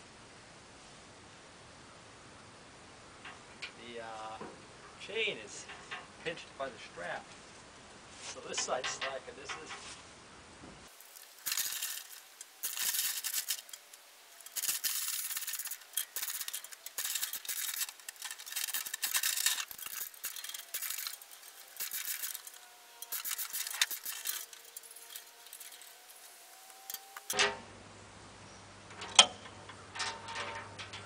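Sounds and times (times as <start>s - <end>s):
chain rattling and clinking: 11.0s - 27.2s.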